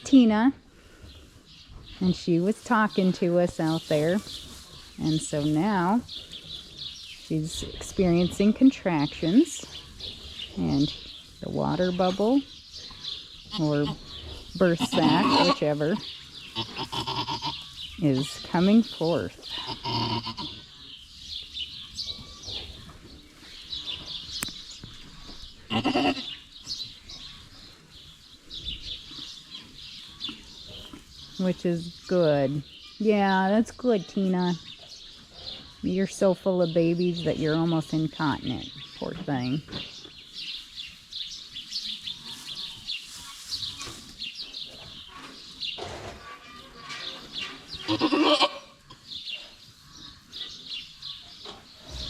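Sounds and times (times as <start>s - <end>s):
small birds chirping: 0.0s - 52.0s
goat bleating: 14.7s - 15.8s, 16.5s - 17.7s, 19.5s - 20.6s, 25.7s - 26.4s, 47.8s - 48.9s.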